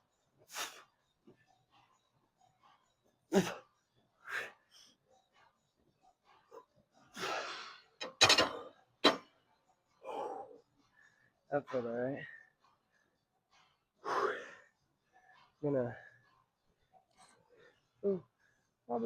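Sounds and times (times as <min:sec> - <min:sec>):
man breathing hard: 0:14.0 - 0:14.8.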